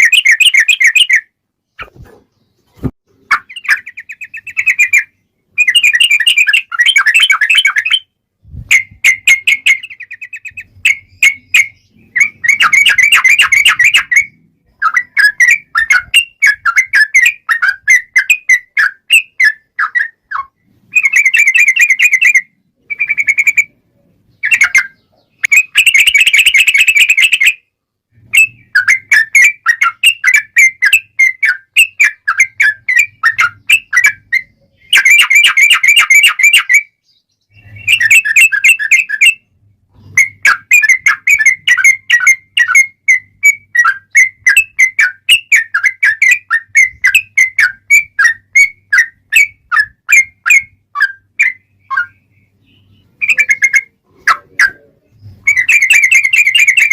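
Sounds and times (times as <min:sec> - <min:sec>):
bird singing trills: 0:00.0 - 0:56.9.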